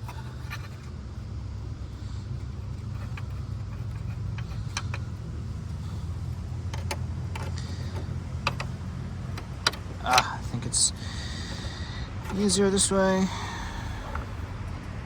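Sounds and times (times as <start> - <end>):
steady low hum: 0.0 - 15.0
hand tool clicks on screws: 3.0 - 5.1, 6.7 - 10.3.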